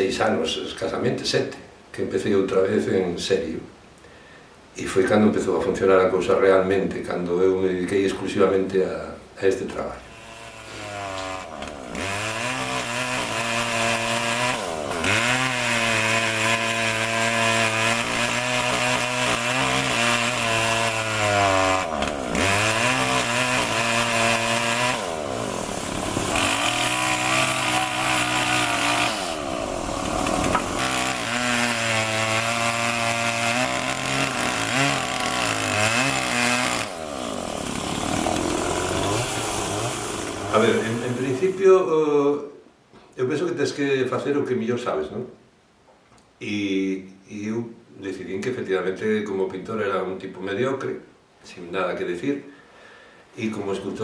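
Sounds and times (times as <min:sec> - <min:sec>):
chainsaw cutting wood: 0:10.0 - 0:41.6.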